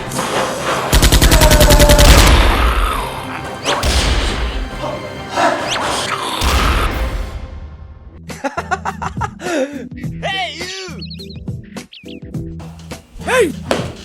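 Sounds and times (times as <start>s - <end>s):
dramatic action music: 0.0s - 8.4s.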